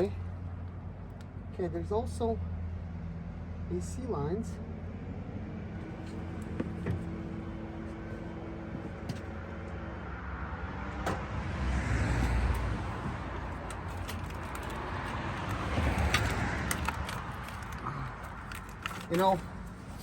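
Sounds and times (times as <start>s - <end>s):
vehicle passing: 4.4s - 20.0s.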